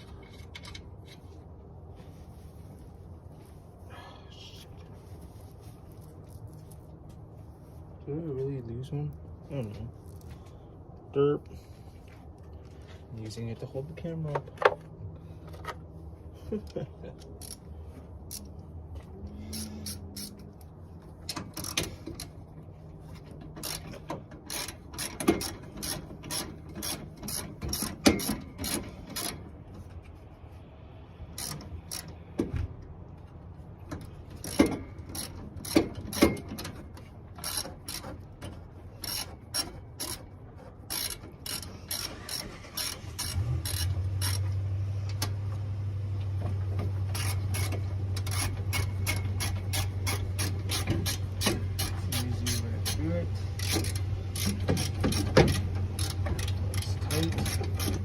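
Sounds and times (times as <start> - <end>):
steady low hum: 0.0 - 58.0
ratchet wrench clicking: 17.4 - 17.7, 18.3 - 18.5, 19.5 - 22.4, 23.6 - 29.4, 31.3 - 32.2, 34.4 - 36.8, 37.4 - 38.2, 39.0 - 40.2, 40.9 - 44.5, 47.1 - 58.0.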